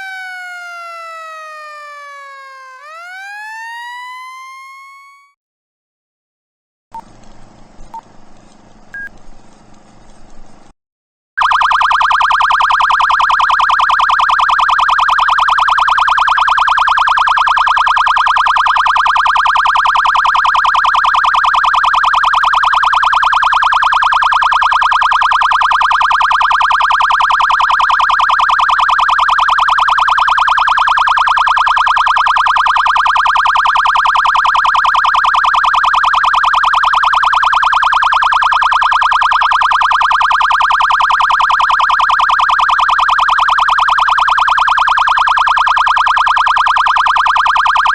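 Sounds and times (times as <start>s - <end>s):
police siren rapid yelp: 0.0s - 5.4s, 11.4s - 13.3s.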